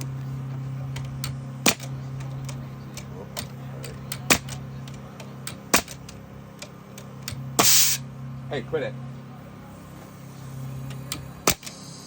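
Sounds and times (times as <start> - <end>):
nail gun firing: 1.6 - 1.9, 5.7 - 6.0, 7.6 - 8.0, 11.4 - 11.8.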